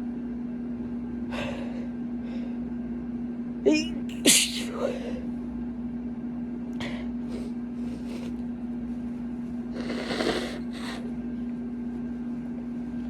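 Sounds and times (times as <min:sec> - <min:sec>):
air conditioner humming: 0:00.0 - 0:13.0
person sniffing: 0:09.8 - 0:11.1.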